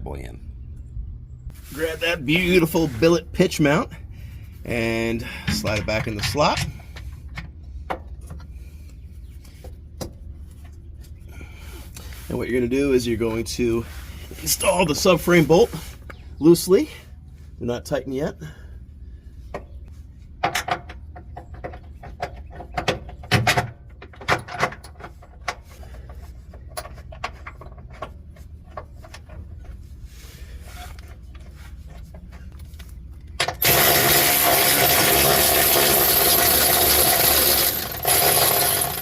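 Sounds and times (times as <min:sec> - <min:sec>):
power tool driving bolt: 0:33.4 - 0:39.0.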